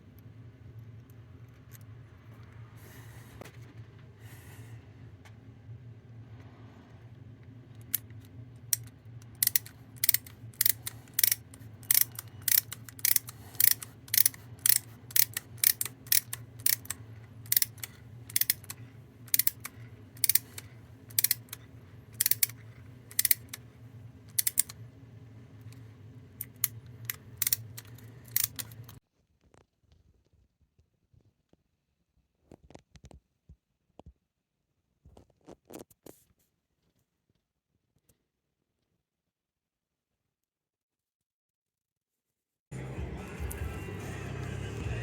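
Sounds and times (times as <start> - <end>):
steady low hum: 0.0 - 29.0
sharp metallic clicks: 7.8 - 21.6, 22.2 - 23.6, 24.3 - 24.8, 26.4 - 29.0.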